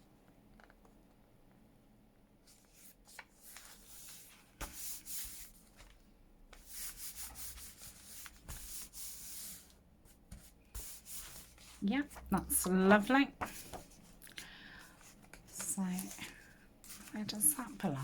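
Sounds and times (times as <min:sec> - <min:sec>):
paper rustling: 0:02.5 - 0:06.0, 0:10.3 - 0:18.0.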